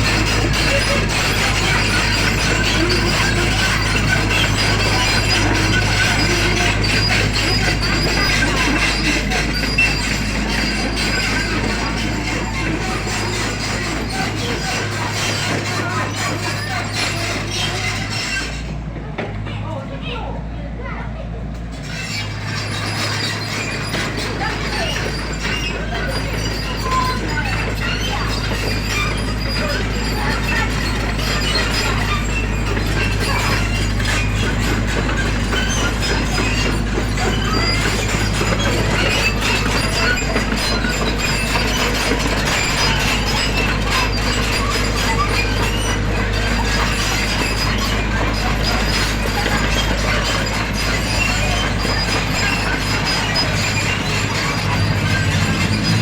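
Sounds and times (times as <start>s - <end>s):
metallic clanks and squeaks: 0.0s - 20.2s, 21.5s - 56.0s
diesel engine running: 0.0s - 56.0s.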